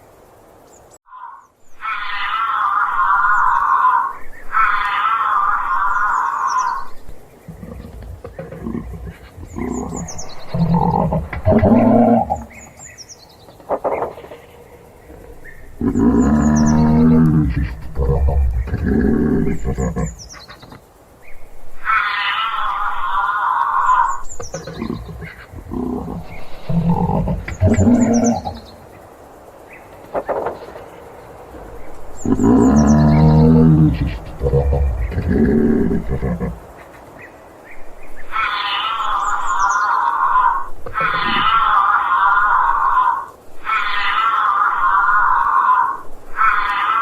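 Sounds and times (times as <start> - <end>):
faint birds chirping: 0.0 - 47.0
giraffe high pitched call: 1.1 - 7.0
high wavering animal sound: 1.1 - 12.9, 13.6 - 20.6, 21.8 - 29.0, 31.8 - 36.7, 38.2 - 47.0
giraffe humming and snoring: 7.4 - 12.6, 14.1 - 20.2, 24.4 - 28.7, 32.2 - 36.7.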